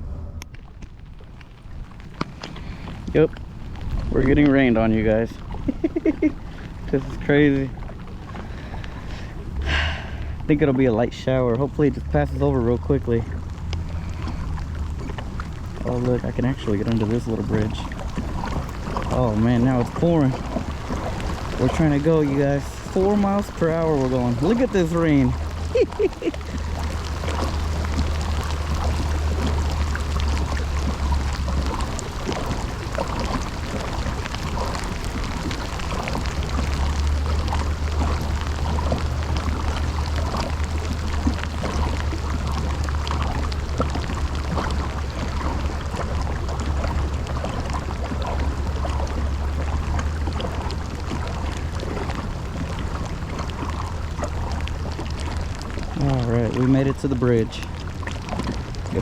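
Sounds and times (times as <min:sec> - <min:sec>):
heavy rain on water and kayak: 0:00.0 - 0:59.0
low steady hum: 0:00.0 - 0:59.0.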